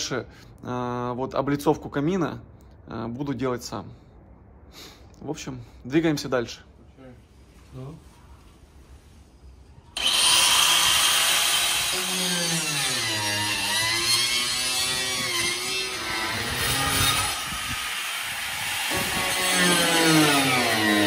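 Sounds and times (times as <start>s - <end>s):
power tool running under load: 10.0s - 21.0s.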